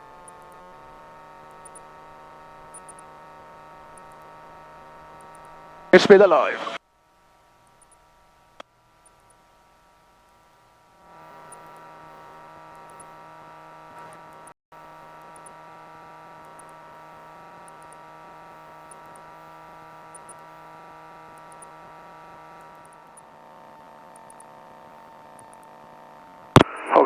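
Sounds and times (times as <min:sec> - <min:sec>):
electrical hum and whine: 0:00.0 - 0:27.0.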